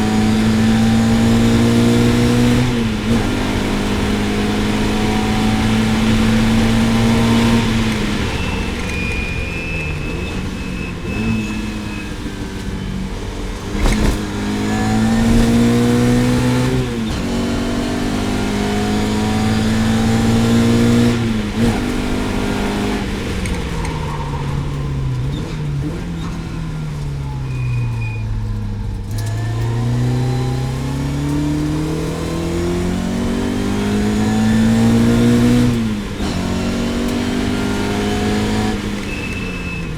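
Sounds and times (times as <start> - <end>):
racing car engine accelerating: 0.0 - 39.9.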